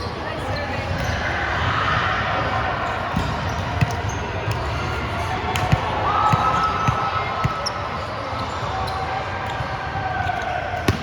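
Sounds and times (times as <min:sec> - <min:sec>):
din of sports hall: 0:00.0 - 0:11.0
ball bouncing on gym floor: 0:03.1 - 0:04.8, 0:10.8 - 0:11.0.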